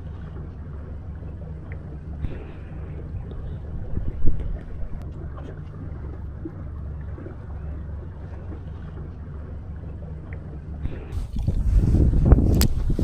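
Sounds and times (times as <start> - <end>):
wind rumbling on microphone: 0.0 - 13.0
light clicks: 12.4 - 12.9.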